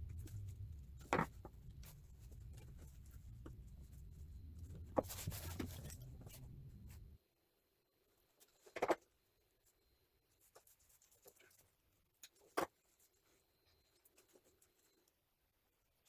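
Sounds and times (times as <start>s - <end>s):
faint rustling: 0.0s - 7.2s.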